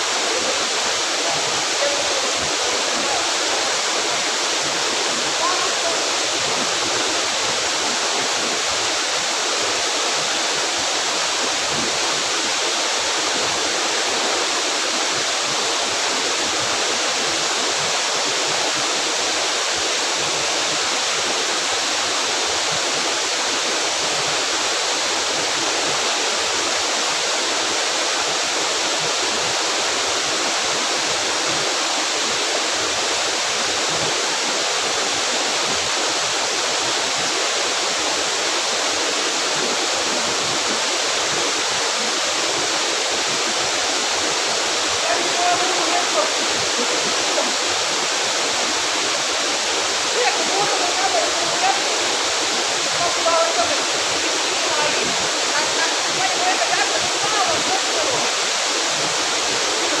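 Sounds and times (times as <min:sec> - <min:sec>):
waterfall roaring: 0:00.0 - 1:00.0.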